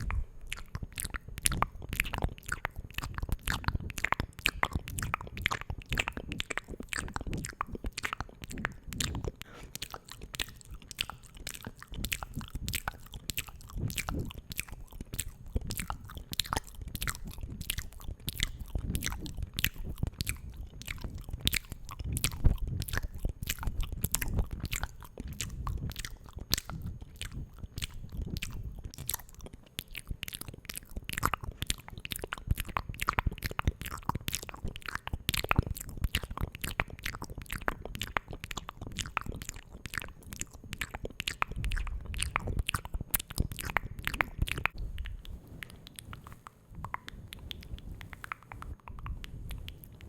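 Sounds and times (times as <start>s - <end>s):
wet mouth clicks and smacks: 0.0s - 50.0s.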